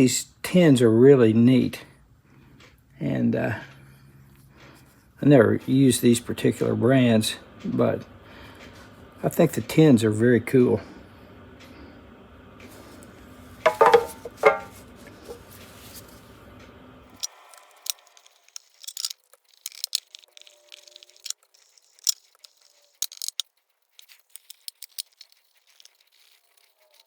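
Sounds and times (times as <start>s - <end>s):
metal tins clanking: 13.7s - 15.5s.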